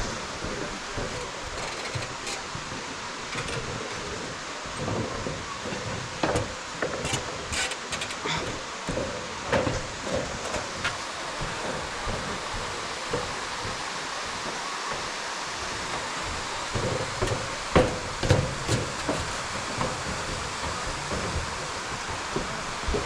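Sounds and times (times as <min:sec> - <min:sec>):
waterfall rushing: 0:00.0 - 0:23.0
soft knocks and rustles: 0:03.3 - 0:13.8.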